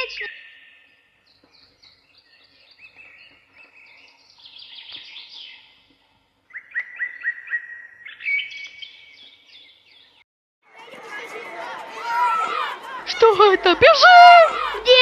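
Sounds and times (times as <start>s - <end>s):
wild birds singing and chirping: 0.0s - 10.2s.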